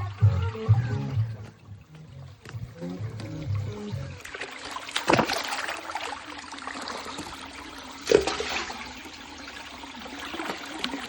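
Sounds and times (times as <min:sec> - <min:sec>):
water pouring and splashing: 0:00.0 - 0:11.0
loud splashes: 0:04.3 - 0:06.2.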